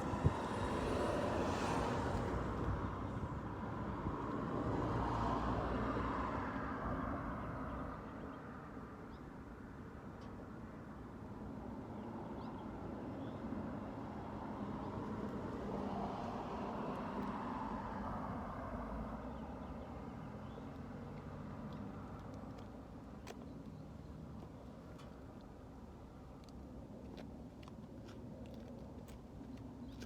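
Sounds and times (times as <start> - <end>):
wind blowing over microphone: 0.0 - 3.6.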